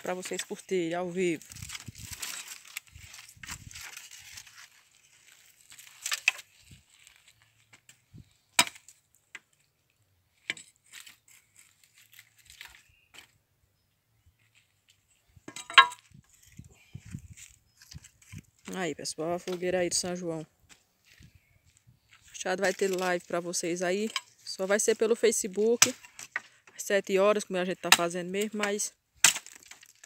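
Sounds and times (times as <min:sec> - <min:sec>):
bonfire wood cracking: 0:00.0 - 0:13.3, 0:22.4 - 0:26.8, 0:27.8 - 0:30.0.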